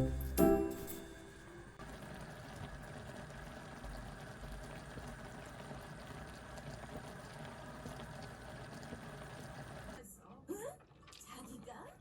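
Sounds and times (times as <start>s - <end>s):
faint watery noise: 1.4s - 10.0s.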